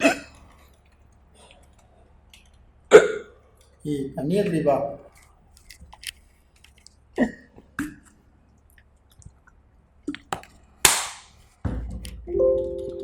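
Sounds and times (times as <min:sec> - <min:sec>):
sharp throat sounds: 0:02.9 - 0:03.4.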